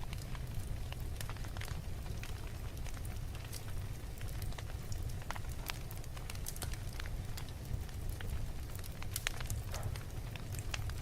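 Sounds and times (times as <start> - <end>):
low rumble of flames: 0.0 - 11.0
wood fire popping: 0.0 - 11.0.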